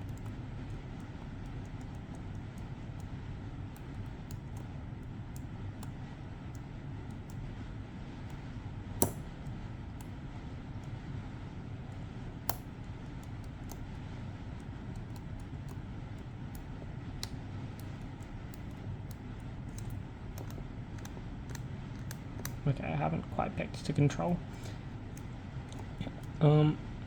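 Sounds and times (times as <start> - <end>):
low background hum: 0.0 - 27.0
lock picking metallic clicks: 9.0 - 10.1, 14.9 - 22.6.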